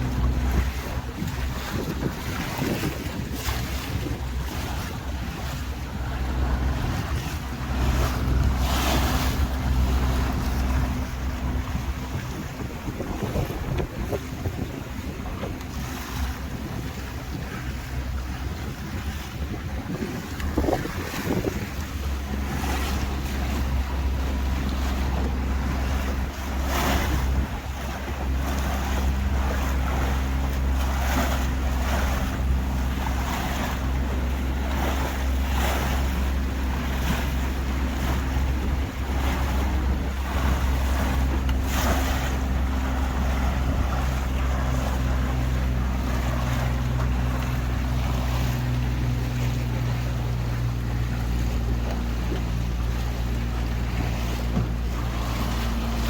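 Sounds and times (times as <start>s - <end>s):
boat engine running: 0.0s - 56.0s
water slapping against hull: 0.0s - 56.0s
wind on microphone: 0.0s - 56.0s.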